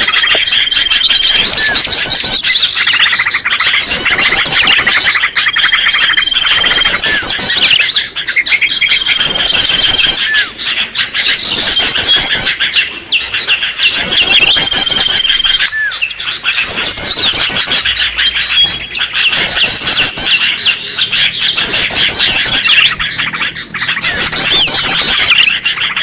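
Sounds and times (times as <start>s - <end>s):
birds chattering and chirping: 0.0s - 26.0s.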